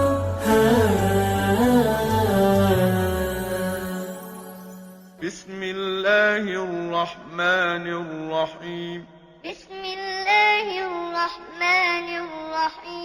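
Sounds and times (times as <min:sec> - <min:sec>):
man chanting recitation: 0:05.2 - 0:09.2.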